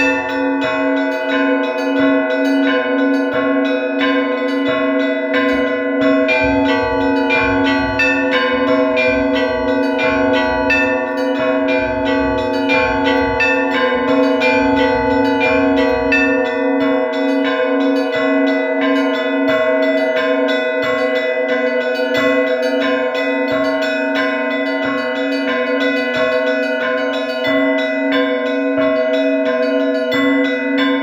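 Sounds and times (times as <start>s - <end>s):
large bell ringing: 0.0s - 31.0s
small bells struck rapidly: 0.0s - 31.0s.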